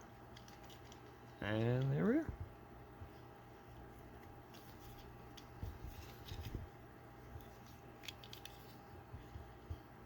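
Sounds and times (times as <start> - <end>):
hands handling toy car and packaging: 7.4 - 8.8.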